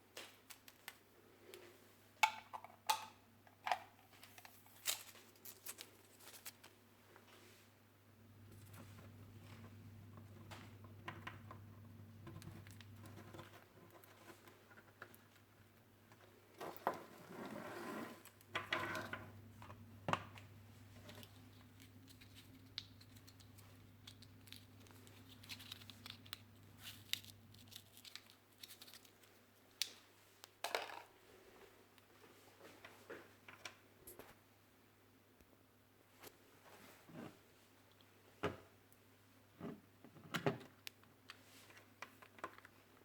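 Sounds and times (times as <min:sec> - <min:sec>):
packaging crinkling and tearing: 0:04.5 - 0:06.8, 0:21.1 - 0:29.4.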